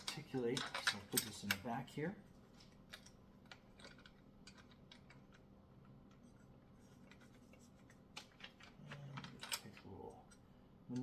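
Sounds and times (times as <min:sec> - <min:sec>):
small metal parts clicking: 0:00.0 - 0:01.8, 0:02.6 - 0:05.4, 0:08.2 - 0:11.0.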